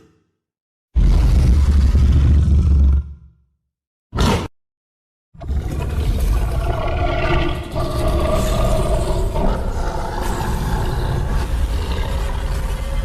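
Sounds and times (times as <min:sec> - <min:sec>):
monster growling roar: 0:01.0 - 0:03.2, 0:05.4 - 0:13.0.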